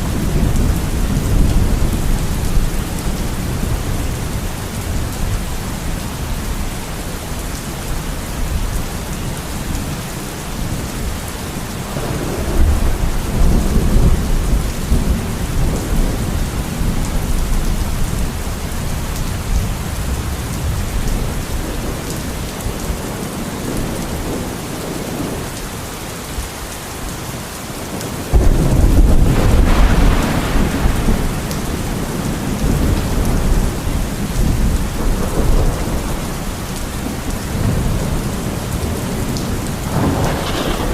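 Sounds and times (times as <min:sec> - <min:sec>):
thunder rumbling: 0:00.0 - 0:06.6, 0:11.8 - 0:18.4, 0:28.0 - 0:40.9
heavy rain: 0:00.0 - 0:40.9
loud thunderclap: 0:11.9 - 0:17.0, 0:28.3 - 0:36.4, 0:39.8 - 0:40.9.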